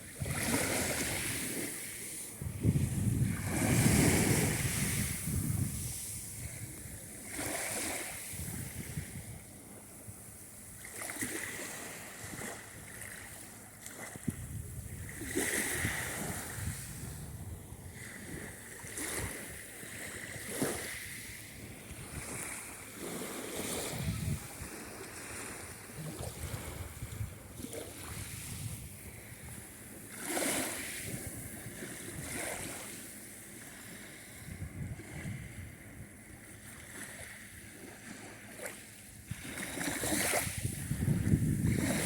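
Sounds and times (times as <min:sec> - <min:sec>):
sea surf breaking on shore: 0:00.0 - 0:09.2, 0:14.9 - 0:29.4.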